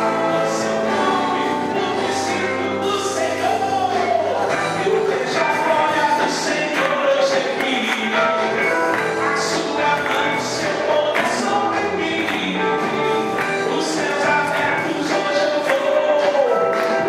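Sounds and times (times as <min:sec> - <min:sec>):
choir singing gospel song: 0:00.0 - 0:08.0
band playing: 0:00.0 - 0:17.0.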